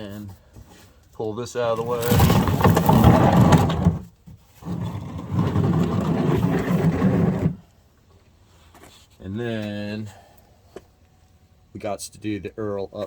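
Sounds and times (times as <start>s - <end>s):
object dragged across ground: 1.8s - 7.7s.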